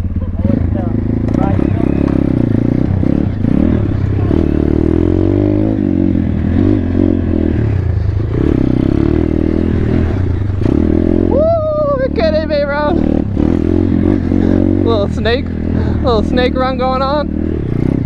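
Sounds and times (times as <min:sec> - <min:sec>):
motorbike engine revving: 0:00.0 - 0:18.0.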